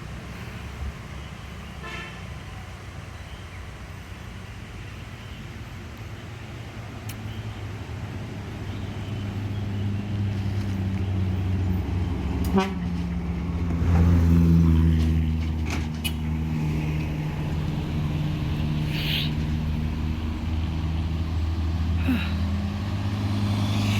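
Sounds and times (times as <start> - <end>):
truck engine low hum: 5.6 - 23.9.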